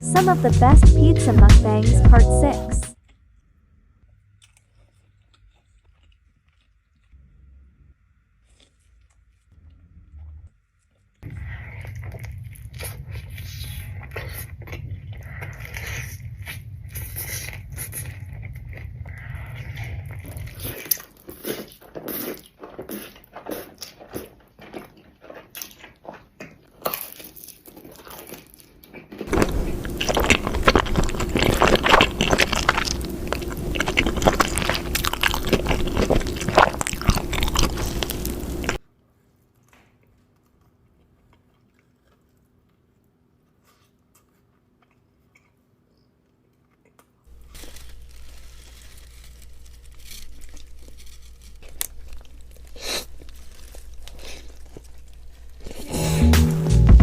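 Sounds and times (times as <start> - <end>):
biting and chewing pizza: 3.0 - 7.7, 8.3 - 57.0
crisp crust crunching: 4.1 - 7.2, 10.8 - 38.8, 46.8 - 57.0.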